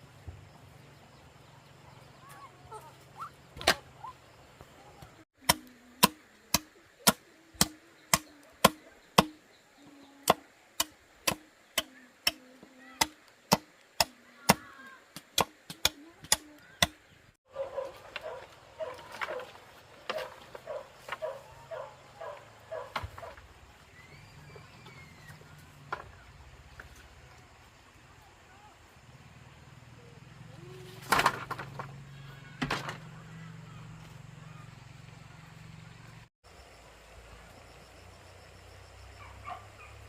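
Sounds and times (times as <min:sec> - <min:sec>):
sharp chopping strikes: 0:05.4 - 0:09.4, 0:10.2 - 0:12.4, 0:13.0 - 0:17.0.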